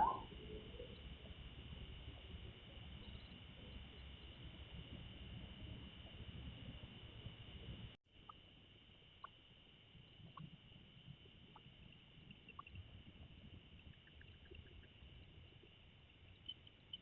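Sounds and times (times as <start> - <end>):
thin high-pitched hum: 0.0 - 17.0
faint clicks: 10.2 - 17.0.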